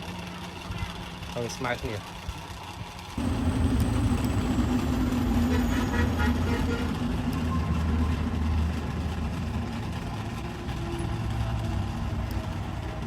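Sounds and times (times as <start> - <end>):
motor humming: 3.2 - 12.8.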